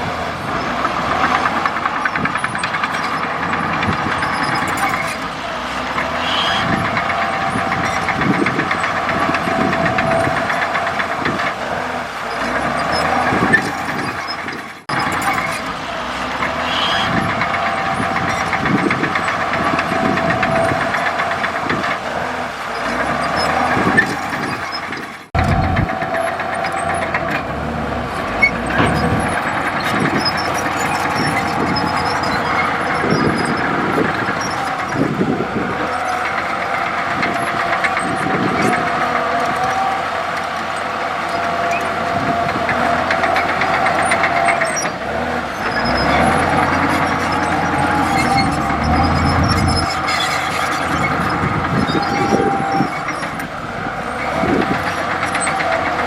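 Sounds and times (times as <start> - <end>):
bulldozer engine under load: 0.0 - 56.0
metal clanks and knocks: 22.8 - 39.8.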